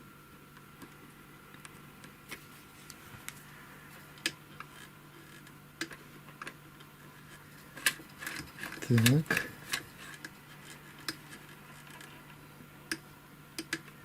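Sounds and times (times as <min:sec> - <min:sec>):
faint steady hum: 0:00.0 - 0:14.0
small clicks and ticks: 0:13.6 - 0:14.0.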